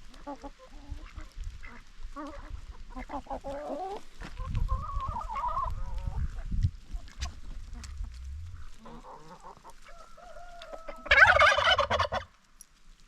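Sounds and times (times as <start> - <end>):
ducks calling: 0.2 - 12.3
low rumble: 5.7 - 9.5.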